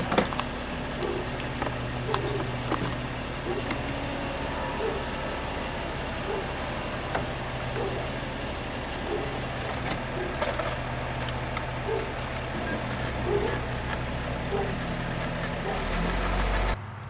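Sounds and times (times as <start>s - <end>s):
metallic clicks and jingles: 8.8s - 15.9s.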